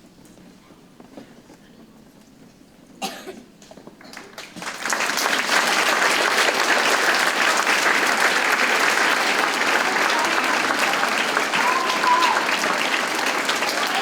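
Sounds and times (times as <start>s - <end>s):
children applauding: 4.0s - 14.0s.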